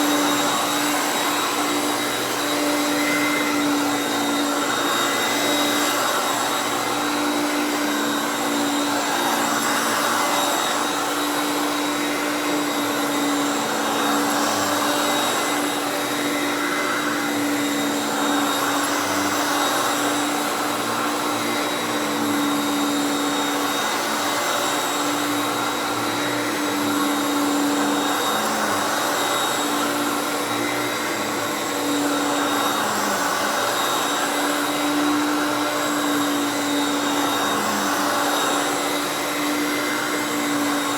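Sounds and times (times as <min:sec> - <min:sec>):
upright vacuum running: 0:00.0 - 0:40.9.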